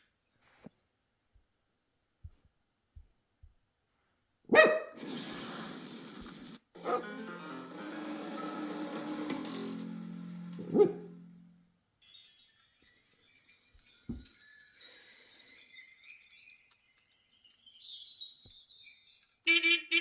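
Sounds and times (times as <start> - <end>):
high tinkling jingle: 12.0 - 19.5.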